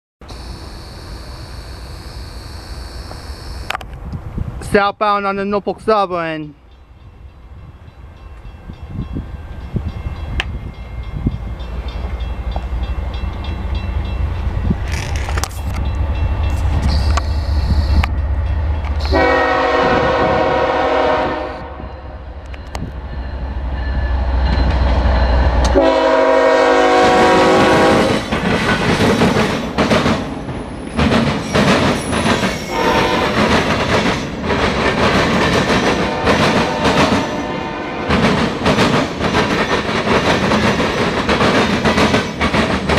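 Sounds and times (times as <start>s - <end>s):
train horn blasts: 0.2s - 3.8s, 16.5s - 18.1s, 19.0s - 22.1s, 25.6s - 28.2s, 32.6s - 33.5s, 36.0s - 38.2s
diesel locomotive rumble: 7.0s - 42.9s
train wheels clattering on rails: 22.4s - 26.2s, 26.8s - 42.9s.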